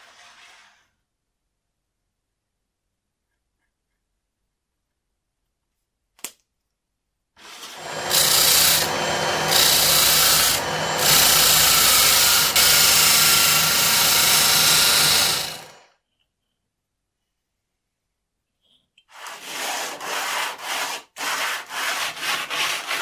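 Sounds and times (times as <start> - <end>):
power tool motor hum: 7.4 - 15.8
rasping on wood: 7.8 - 15.7, 19.3 - 23.0.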